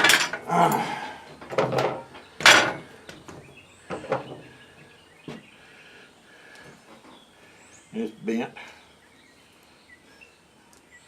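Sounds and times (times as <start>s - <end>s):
steel parts knocking and clattering: 0.0s - 0.4s, 1.4s - 2.8s.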